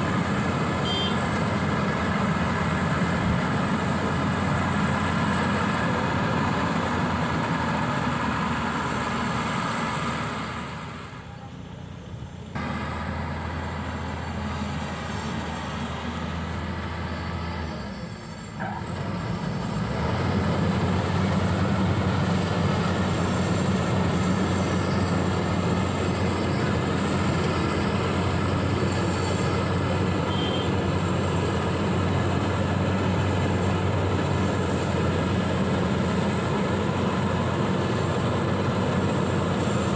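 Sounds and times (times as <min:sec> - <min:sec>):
combine harvester droning: 0:00.0 - 0:39.9.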